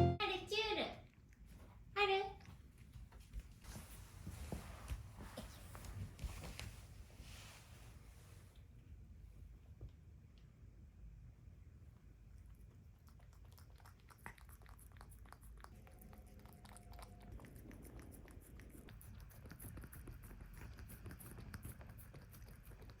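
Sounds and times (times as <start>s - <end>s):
cat chewing clicks: 12.4s - 23.0s.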